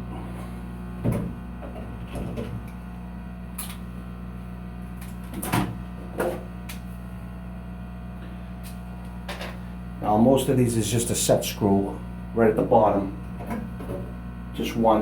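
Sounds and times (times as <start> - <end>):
low electrical hum: 0.0 - 15.0
clicks and knocks of fan motor: 5.0 - 6.8, 13.4 - 14.1.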